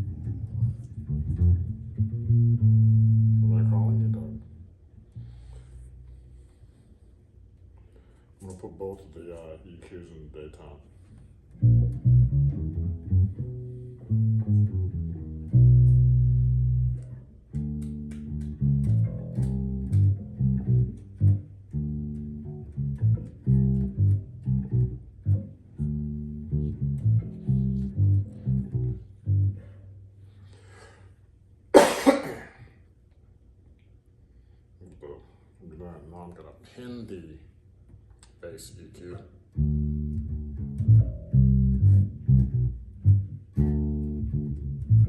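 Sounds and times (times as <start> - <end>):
plucked electric bass notes: 0.0 - 6.1, 11.5 - 30.4, 39.5 - 45.0
person coughing: 31.8 - 32.7.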